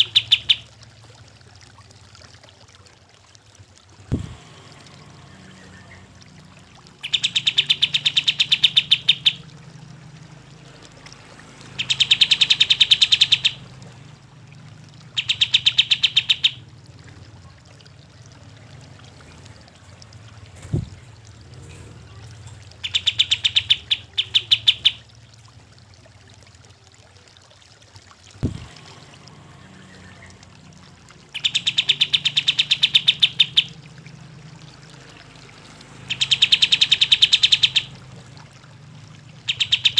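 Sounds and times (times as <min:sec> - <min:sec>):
bird singing rapid notes: 0:00.0 - 0:00.7, 0:07.0 - 0:09.5, 0:11.8 - 0:13.6, 0:15.1 - 0:16.6, 0:22.8 - 0:25.0, 0:31.3 - 0:33.8, 0:36.1 - 0:38.0, 0:39.4 - 0:39.9.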